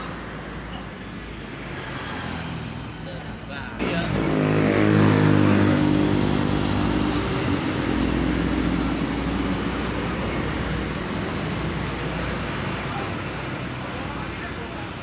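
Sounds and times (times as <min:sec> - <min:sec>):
steady road noise: 0:00.0 - 0:15.0
vehicle engine passing by: 0:03.7 - 0:15.0.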